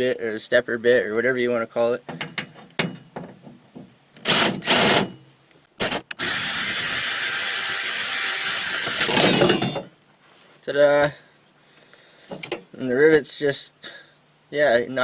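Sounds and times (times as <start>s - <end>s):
power drill drilling metal: 4.2s - 5.2s, 5.8s - 9.6s.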